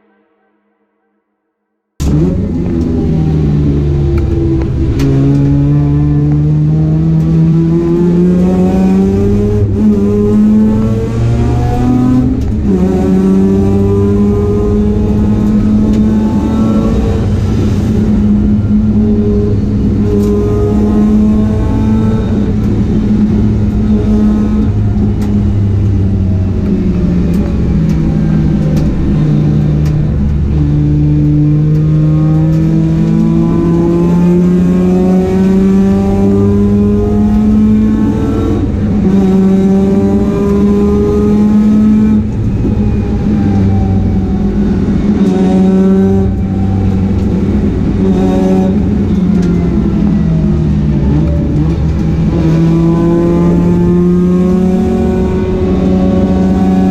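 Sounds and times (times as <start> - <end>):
race car engine revving through gears: 2.0 - 56.9.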